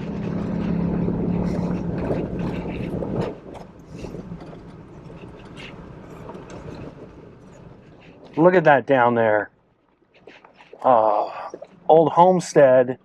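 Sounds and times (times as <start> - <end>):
rattling and clicks: 0.0 - 8.5
truck engine hum: 0.0 - 13.0.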